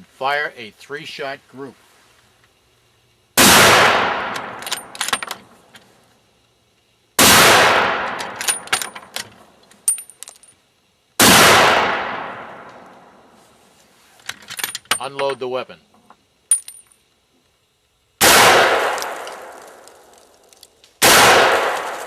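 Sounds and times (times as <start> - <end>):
rifle shots echoing: 3.4 - 4.6, 7.2 - 8.4, 11.2 - 12.7, 18.2 - 20.1, 21.0 - 22.0
light metallic clinks: 8.3 - 10.6, 16.5 - 17.1.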